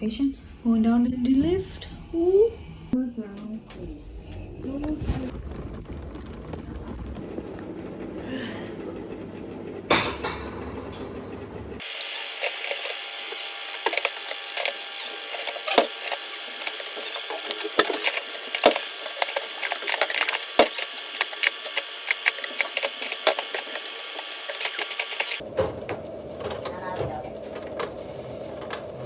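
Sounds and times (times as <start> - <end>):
steady high hum: 7.2 - 26.6
rapid clicks and knocks: 11.8 - 25.4.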